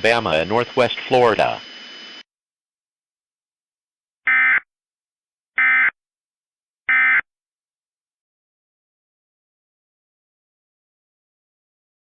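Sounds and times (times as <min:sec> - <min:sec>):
digital data tone bursts: 0:00.0 - 0:02.2.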